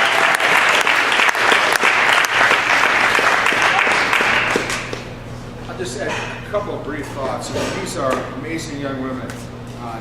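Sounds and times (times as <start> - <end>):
audience applauding: 0.0 - 5.1.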